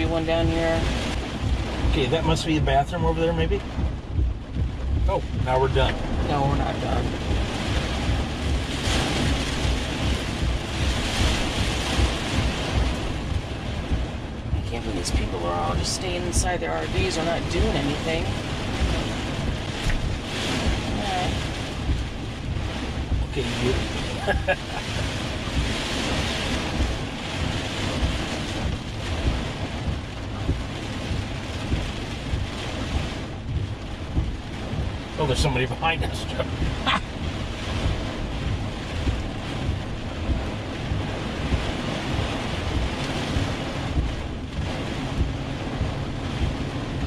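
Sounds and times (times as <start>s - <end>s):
vehicle road and engine noise: 0.0s - 47.0s
wind rushing: 0.0s - 47.0s.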